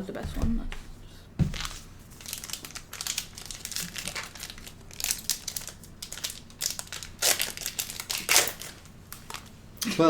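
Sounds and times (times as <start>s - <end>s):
plastic wrapper crinkling: 1.5s - 9.5s.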